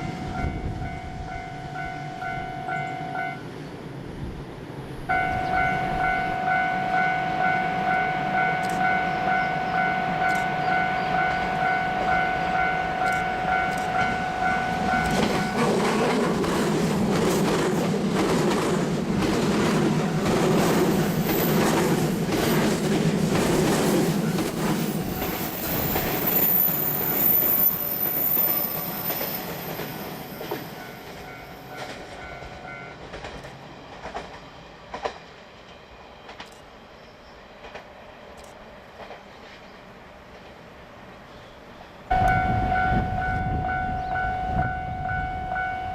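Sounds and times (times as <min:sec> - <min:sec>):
level crossing warning bell: 0:00.0 - 0:03.5, 0:05.1 - 0:15.8, 0:24.2 - 0:33.1, 0:42.1 - 0:45.9
train wheels clattering over rail joints: 0:14.9 - 0:32.2, 0:33.0 - 0:35.4.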